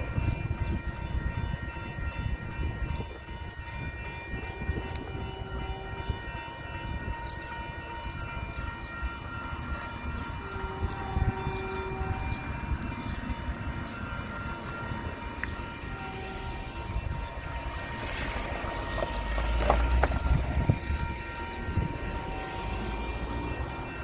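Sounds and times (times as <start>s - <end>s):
train rumbling past: 4.4s - 24.0s.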